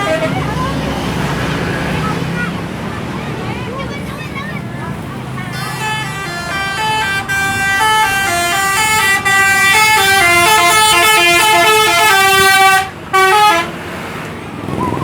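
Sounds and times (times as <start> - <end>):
multi-tone air horn tune: 5.5 - 13.8.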